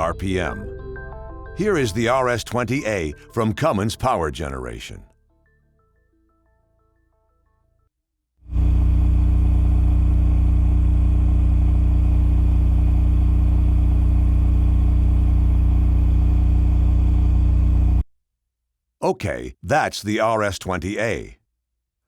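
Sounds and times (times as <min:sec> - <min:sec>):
generator engine hum: 0:08.5 - 0:18.0.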